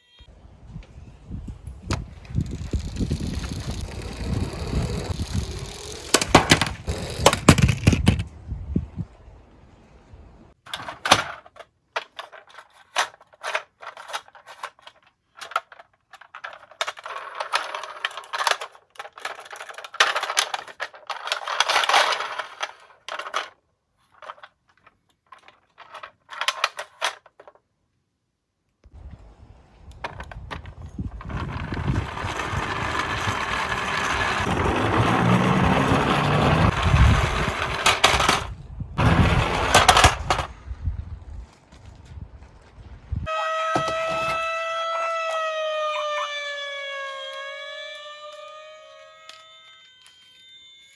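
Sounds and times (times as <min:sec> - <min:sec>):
rolling rumble: 0:00.4 - 0:27.6, 0:28.9 - 0:44.6
toy cars clicking and clattering: 0:01.9 - 0:08.3, 0:10.7 - 0:27.7, 0:29.9 - 0:40.5.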